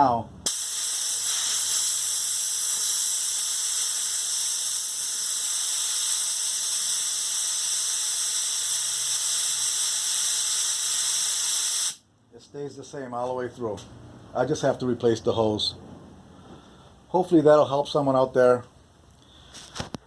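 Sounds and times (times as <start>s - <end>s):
compressed air hissing: 0.4s - 12.0s.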